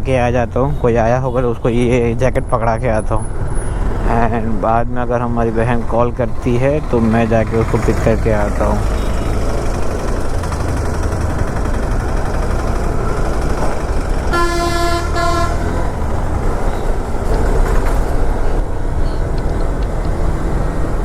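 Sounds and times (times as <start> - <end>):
motorcycle engine rumble: 0.0 - 21.0
vehicle horn: 0.7 - 2.0, 8.8 - 9.8, 14.2 - 17.0.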